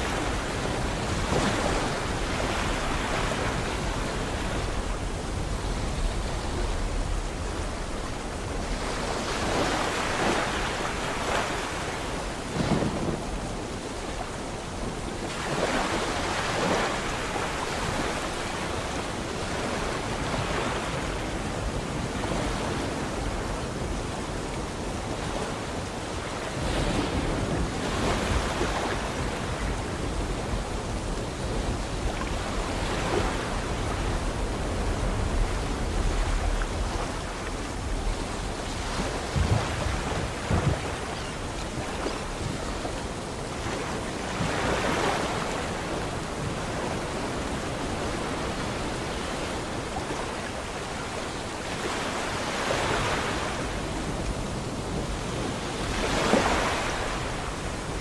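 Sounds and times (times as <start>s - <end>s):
sea waves breaking: 0.0s - 58.0s.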